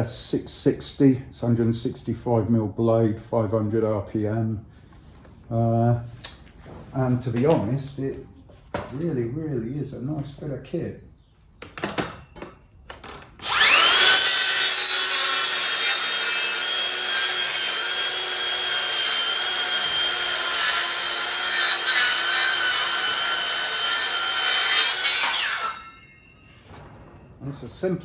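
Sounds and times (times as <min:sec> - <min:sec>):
circular saw cutting wood: 0:13.4 - 0:26.3.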